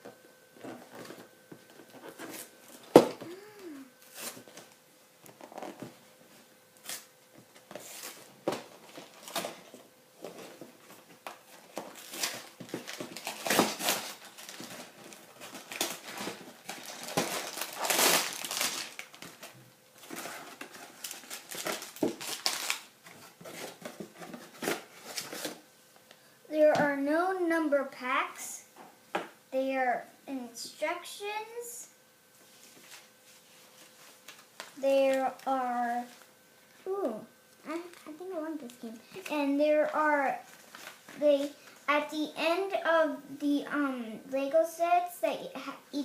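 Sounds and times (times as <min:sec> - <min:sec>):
plastic bags and paper crinkling: 0:07.6 - 0:25.6, 0:40.3 - 0:41.8.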